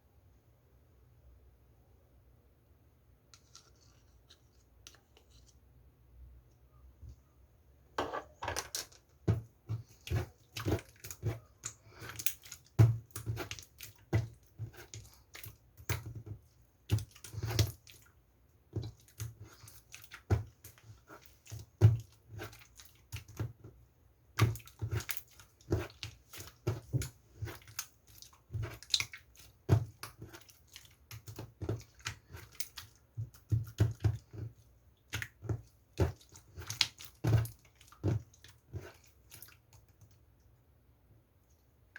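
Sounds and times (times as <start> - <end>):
slime squelching by hand: 9.2 - 40.6.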